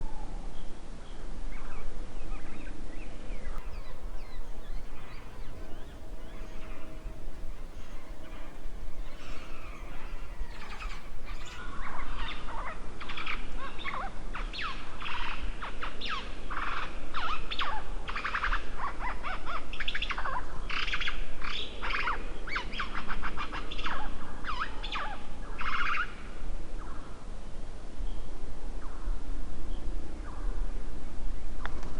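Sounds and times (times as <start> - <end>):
birds chirping: 3.6 - 11.6.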